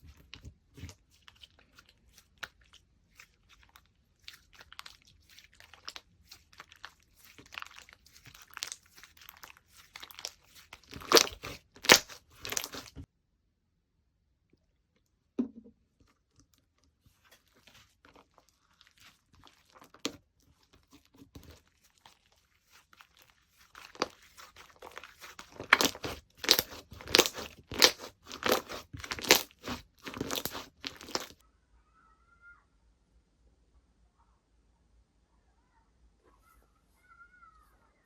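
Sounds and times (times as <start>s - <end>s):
crunchy slime squishes: 0.0s - 13.1s, 16.0s - 31.4s
slime crackling and clicking: 7.4s - 13.0s, 23.8s - 31.4s.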